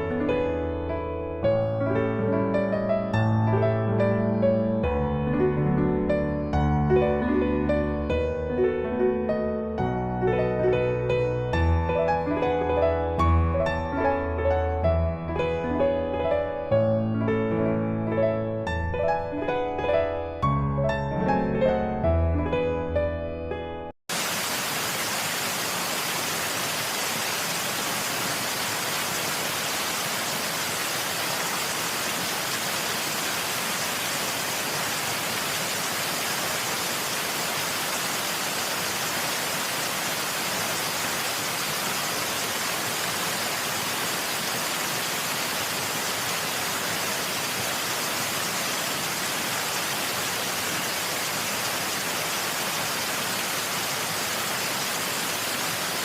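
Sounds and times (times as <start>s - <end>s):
waterfall rushing: 24.1s - 56.0s.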